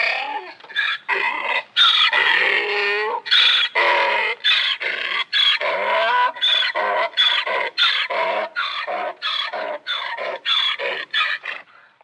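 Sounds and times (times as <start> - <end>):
donkey braying: 0.0 - 11.7.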